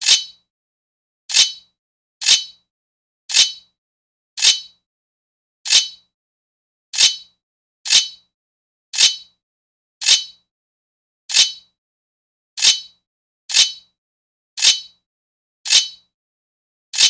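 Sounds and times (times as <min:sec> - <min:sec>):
sword blade scraping metal: 0:00.0 - 0:00.4, 0:01.3 - 0:02.6, 0:03.3 - 0:03.7, 0:04.4 - 0:04.8, 0:05.7 - 0:06.0, 0:07.0 - 0:07.3, 0:07.9 - 0:08.2, 0:09.0 - 0:09.3, 0:10.0 - 0:10.4, 0:11.3 - 0:11.7, 0:12.6 - 0:13.9, 0:14.6 - 0:15.0, 0:15.7 - 0:16.0.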